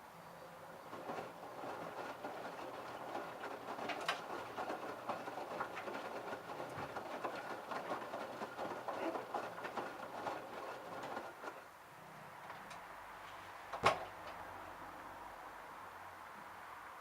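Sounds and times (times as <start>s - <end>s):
clothes knocking in drum: 0.9s - 11.6s.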